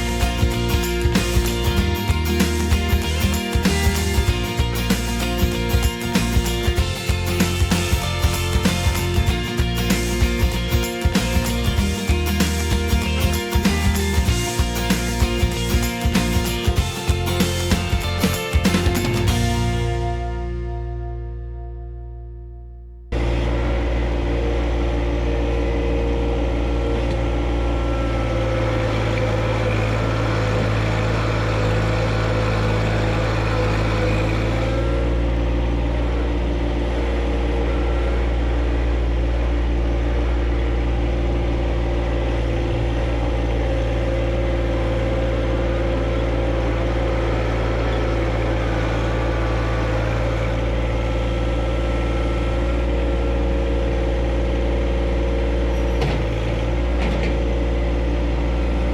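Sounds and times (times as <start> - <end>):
tractor diesel engine running: 0.0 - 21.7, 23.1 - 58.9.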